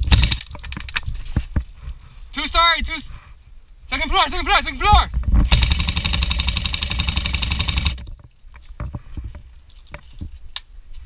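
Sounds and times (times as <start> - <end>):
airsoft gun full-auto burst: 0.0 - 0.5, 5.5 - 8.0.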